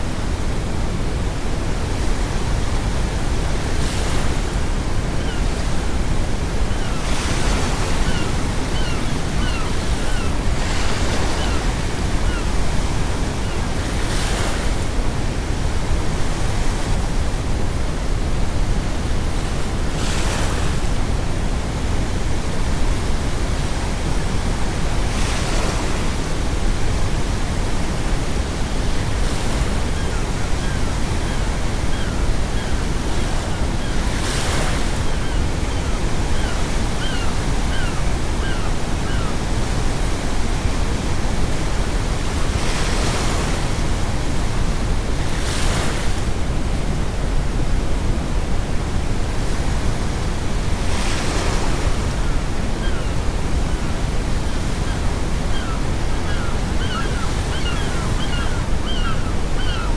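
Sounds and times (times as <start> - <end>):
ocean waves breaking: 5.6 - 14.9, 23.2 - 39.3, 49.0 - 59.9
faint seagull calls: 6.6 - 12.6, 13.3 - 13.7, 29.6 - 39.5, 51.4 - 59.9.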